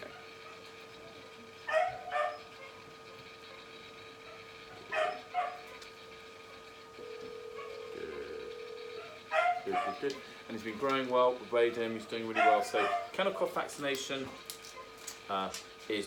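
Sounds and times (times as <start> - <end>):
faint steady hum: 0.0 - 15.8
puppy yipping barks: 1.7 - 2.8, 4.8 - 5.8, 9.3 - 10.0, 12.4 - 13.1.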